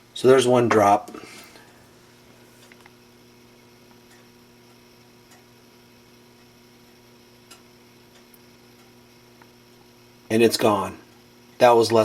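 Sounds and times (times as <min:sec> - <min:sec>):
faint mains hum: 0:00.0 - 0:12.0
soft ticks: 0:03.8 - 0:05.5, 0:06.4 - 0:09.9.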